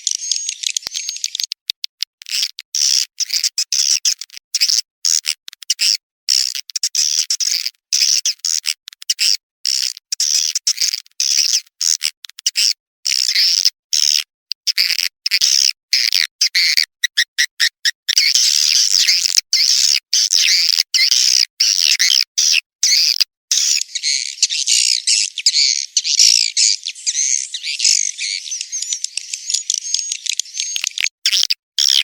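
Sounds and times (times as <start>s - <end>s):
high-pitched chirping bird calls: 0.0s - 1.6s, 16.5s - 32.0s.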